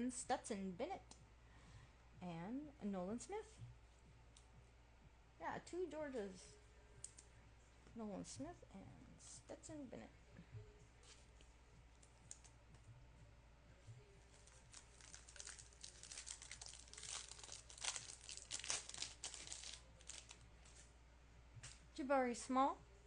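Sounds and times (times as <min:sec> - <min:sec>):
plastic wrapper crinkling and tearing: 0:14.3 - 0:20.4.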